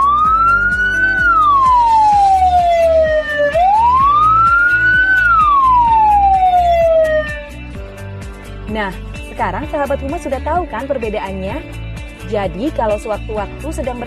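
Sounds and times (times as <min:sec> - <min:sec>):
ambulance siren slow wail: 0:00.0 - 0:07.6
faint background music beat: 0:00.0 - 0:14.0.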